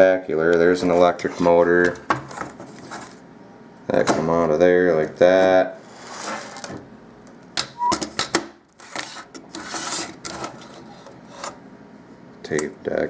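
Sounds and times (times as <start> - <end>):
brief squeak: 7.8 - 8.0.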